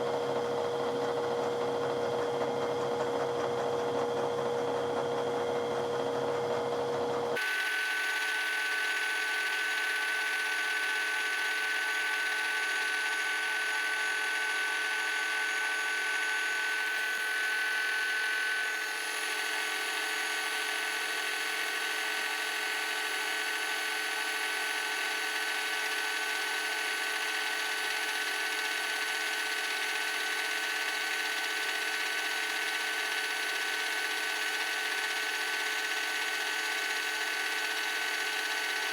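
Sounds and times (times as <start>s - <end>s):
high machining whine: 7.4s - 23.2s.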